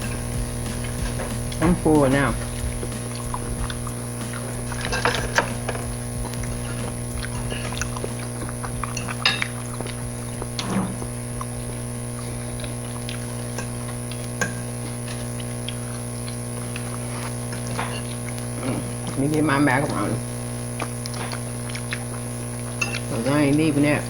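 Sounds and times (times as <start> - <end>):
cutlery and dishes clinking: 0.0 - 2.2, 4.2 - 8.2, 8.9 - 9.9, 10.6 - 11.0, 13.3 - 15.3, 17.1 - 19.0, 22.8 - 23.3
electrical hum: 0.0 - 24.0
mouth noises: 0.0 - 24.0.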